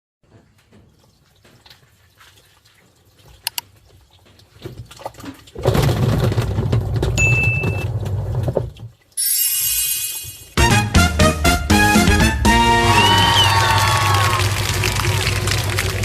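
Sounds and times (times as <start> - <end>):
water churning: 0.8 - 7.3, 13.1 - 16.0
thin high tone: 9.2 - 10.6
washing machine motor humming: 13.0 - 16.0.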